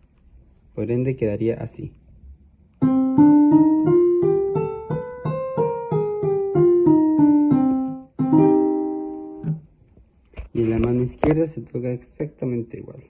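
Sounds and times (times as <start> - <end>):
piano playing a scale: 2.8 - 9.7.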